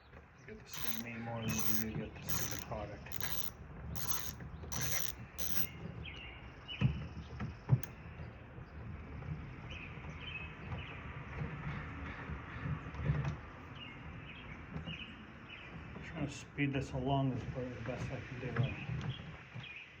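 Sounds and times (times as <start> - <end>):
lock hardware clicking and rasping: 0.7 - 5.7.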